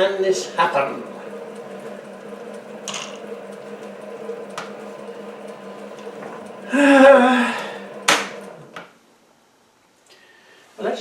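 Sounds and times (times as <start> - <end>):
lathe motor hum: 0.0 - 9.0.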